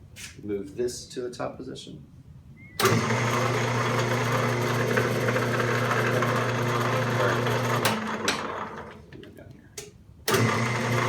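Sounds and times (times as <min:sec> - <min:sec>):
metal lathe humming: 0:02.8 - 0:09.2, 0:10.3 - 0:11.0.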